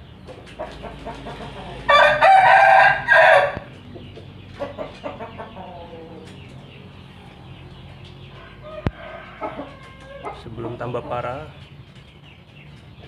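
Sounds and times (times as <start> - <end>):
chicken clucking: 0.1 - 13.0
rooster crowing: 1.9 - 3.7, 8.3 - 10.4.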